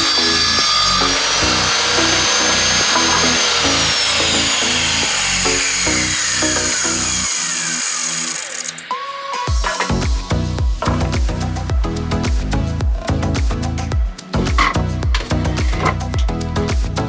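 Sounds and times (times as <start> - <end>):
background music with beat: 0.0 - 6.8, 8.8 - 17.0
power saw cutting wood: 0.0 - 11.7, 14.6 - 16.1.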